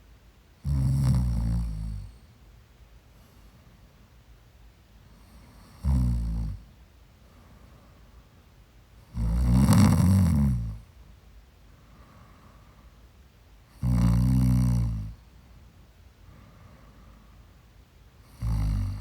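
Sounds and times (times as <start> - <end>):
woman snoring: 0.6 - 2.1, 5.8 - 6.6, 9.1 - 10.8, 13.8 - 15.1, 18.2 - 19.0
quiet breathing: 0.7 - 4.4, 5.0 - 19.0.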